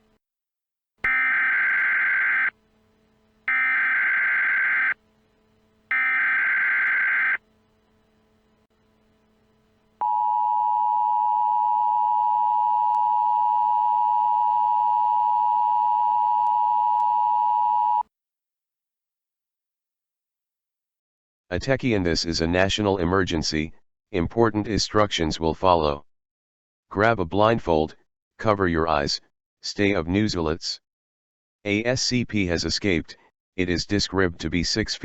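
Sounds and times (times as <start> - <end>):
two-tone attention signal: 1.1 - 2.5, 3.5 - 5.0, 5.9 - 7.4
data burst warble: 3.5 - 5.0.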